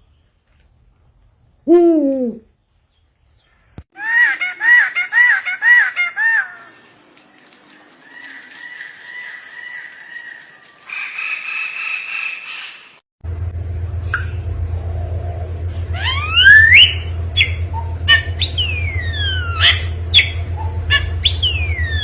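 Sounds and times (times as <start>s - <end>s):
loud arched bird notes: 15.8s - 22.0s.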